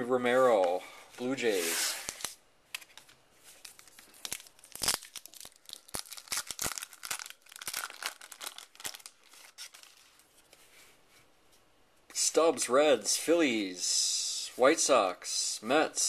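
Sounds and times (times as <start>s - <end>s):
wrapper tearing and crinkling: 3.6s - 10.2s.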